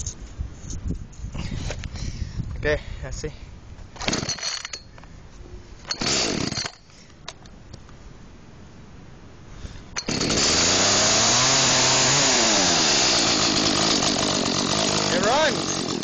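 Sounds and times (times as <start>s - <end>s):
chainsaw recoil starter pull: 4.0s - 4.8s, 10.0s - 16.0s
chainsaw engine running: 5.9s - 6.6s, 10.0s - 16.0s.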